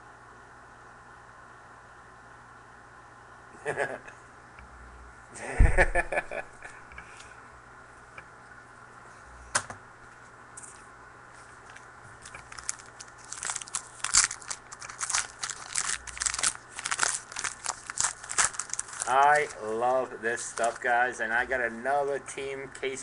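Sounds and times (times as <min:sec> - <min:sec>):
wrapper tearing and crinkling: 0:12.2 - 0:20.9.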